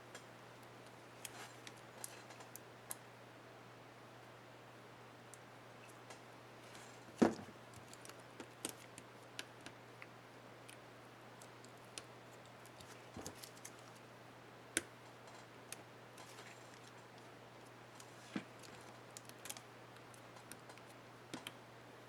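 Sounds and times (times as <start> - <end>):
faint steady hum: 0.0 - 22.0
small plastic clicks and taps: 19.2 - 21.6.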